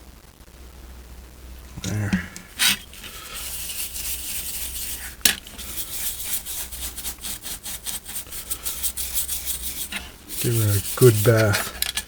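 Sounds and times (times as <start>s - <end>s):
paintbrush scrubbing circuit board: 2.5s - 12.0s.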